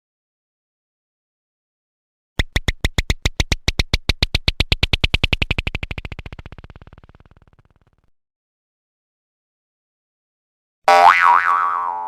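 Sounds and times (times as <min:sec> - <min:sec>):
sharp electronic clicks: 0:02.4 - 0:08.0.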